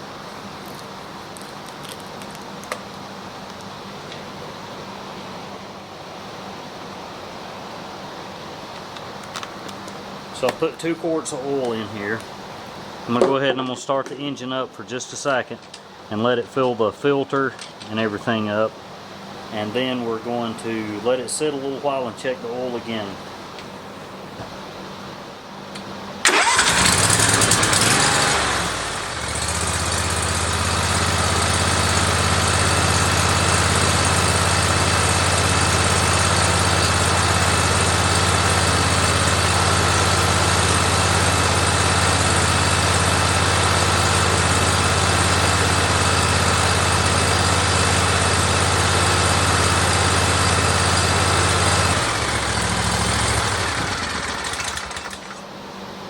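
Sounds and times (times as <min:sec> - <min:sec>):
engine winding down: 0:26.2 - 0:55.5
mower engine starting and running: 0:26.2 - 0:55.6.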